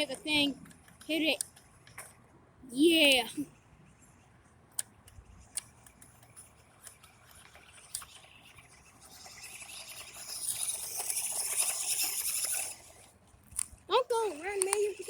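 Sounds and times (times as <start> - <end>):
electric motor whir: 5.6 - 13.2.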